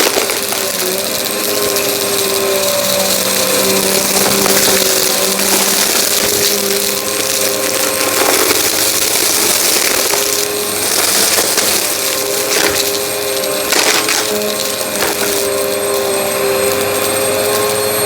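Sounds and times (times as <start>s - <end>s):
debris rattling up nozzle: 0.0s - 18.0s
vacuum cleaner running: 0.0s - 18.0s.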